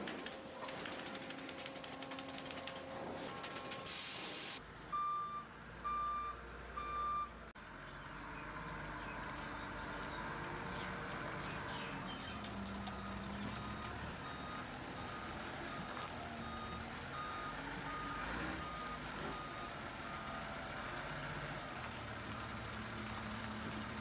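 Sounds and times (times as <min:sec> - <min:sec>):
machinery clicking and rattling: 0:00.0 - 0:04.0
reversing alarm beeping: 0:04.9 - 0:07.3.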